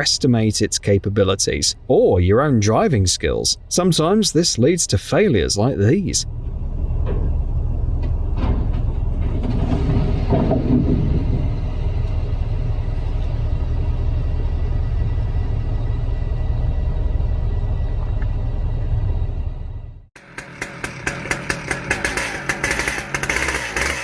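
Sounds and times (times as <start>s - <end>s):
truck engine rumbling: 0.0s - 24.0s.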